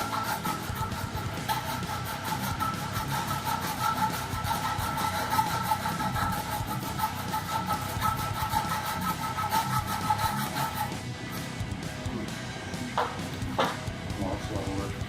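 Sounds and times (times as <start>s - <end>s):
hacksaw cutting metal bar: 0.0s - 11.0s.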